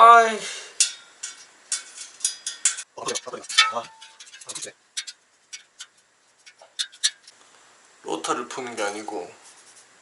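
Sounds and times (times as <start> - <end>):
metal parts clinking: 0.8 - 7.3.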